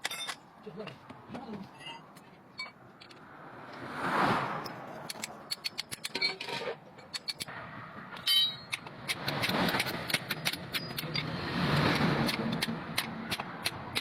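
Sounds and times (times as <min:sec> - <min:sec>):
metal clinking and tapping: 0:00.0 - 0:00.4, 0:08.2 - 0:11.3.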